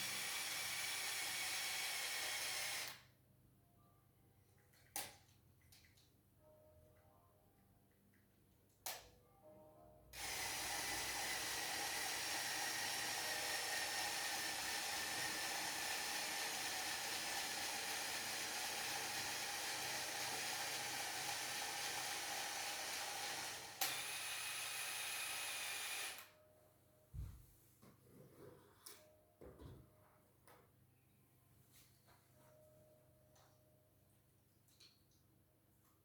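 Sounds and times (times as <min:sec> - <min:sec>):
click: 0:08.8 - 0:09.1
small motor whirring: 0:10.2 - 0:26.3.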